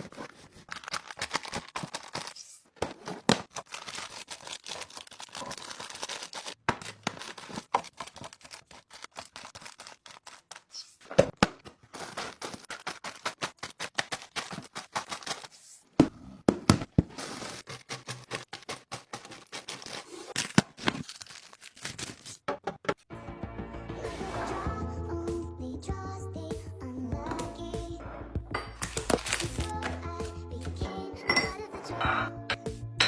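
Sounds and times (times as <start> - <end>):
packaging crinkling and tearing: 0.0 - 11.1, 11.8 - 15.6, 17.2 - 22.5, 28.8 - 30.3.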